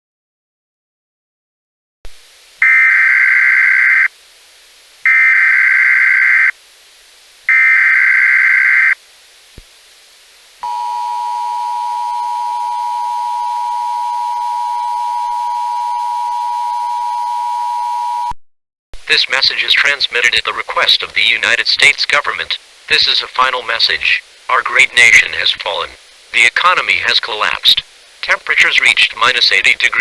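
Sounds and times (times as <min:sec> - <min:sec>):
screeching data bursts: 0:02.6 - 0:04.1, 0:05.0 - 0:06.6, 0:07.5 - 0:09.0, 0:10.6 - 0:18.3
two-tone alert signal: 0:10.6 - 0:18.4.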